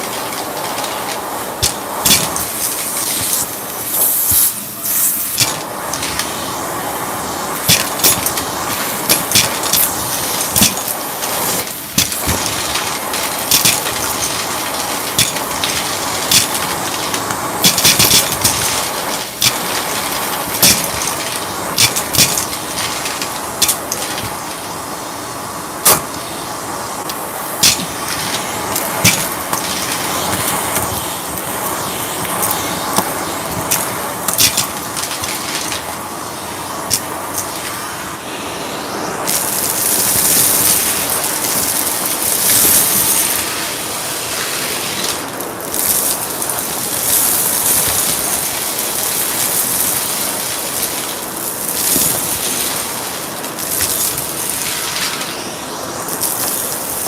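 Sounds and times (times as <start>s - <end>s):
sharp clicks and rattles: 0.0s - 4.5s, 7.5s - 24.7s, 27.0s - 36.0s
vacuum cleaner running: 0.0s - 57.0s.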